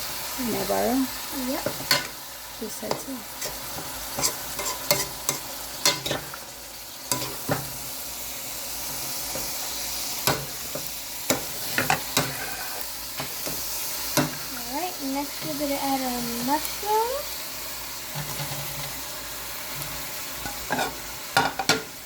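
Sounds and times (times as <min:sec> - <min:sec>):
beef sizzling in a wok: 0:00.0 - 0:22.0
utensil scraping and knocking pan: 0:02.9 - 0:06.3, 0:18.1 - 0:19.0, 0:19.8 - 0:21.9.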